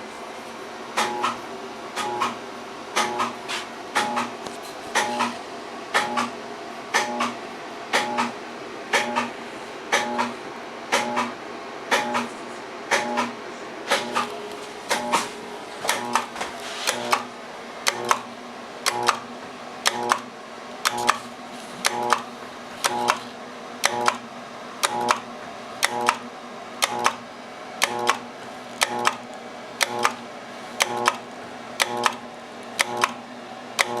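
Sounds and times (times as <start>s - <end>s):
contactor clicking with brief hum: 6.9s - 9.3s, 15.8s - 21.2s, 21.8s - 23.2s, 23.8s - 24.2s, 24.8s - 27.2s, 27.8s - 29.2s, 29.8s - 30.2s, 30.8s - 32.2s, 32.8s - 33.2s, 33.8s - 34.0s.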